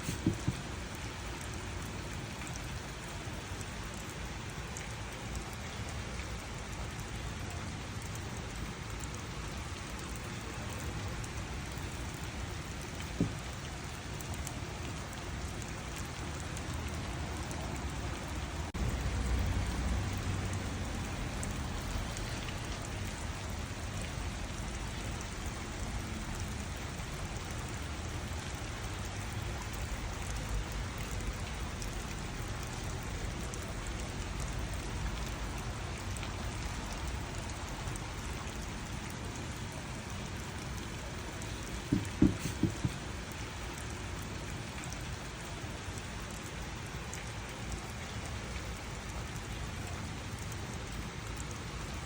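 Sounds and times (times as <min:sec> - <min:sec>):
knock: 0:00.0 - 0:00.6, 0:41.9 - 0:43.0
steady rain falling: 0:00.0 - 0:52.0
water dripping: 0:00.0 - 0:52.0.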